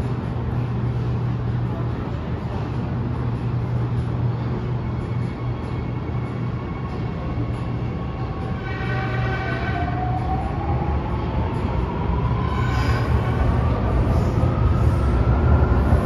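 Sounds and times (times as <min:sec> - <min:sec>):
train running gear rumble: 0:00.0 - 0:16.0
high-pitched squeals: 0:04.8 - 0:16.0.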